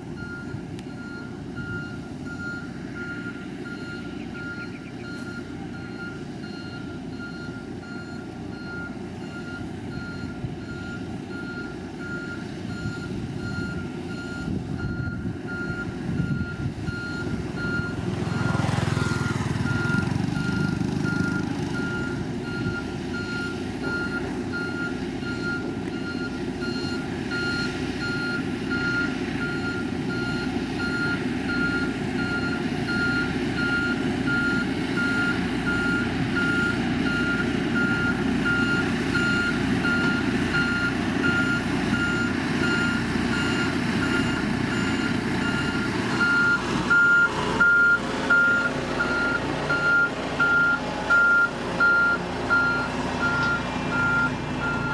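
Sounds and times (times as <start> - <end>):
heavy machine engine running: 0.0 - 54.9
backup alarm beeping: 0.2 - 54.9.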